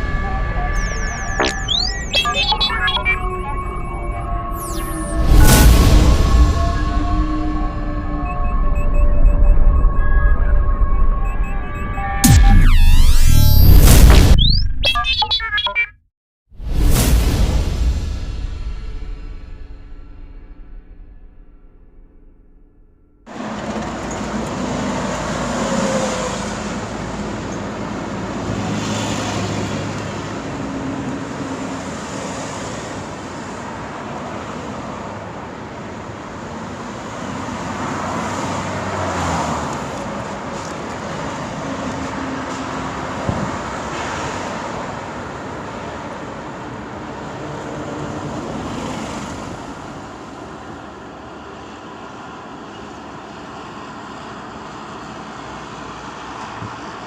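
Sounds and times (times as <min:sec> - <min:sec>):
road noise: 0:00.0 - 0:13.2, 0:23.2 - 0:57.0
vehicles passing: 0:23.3 - 0:57.0.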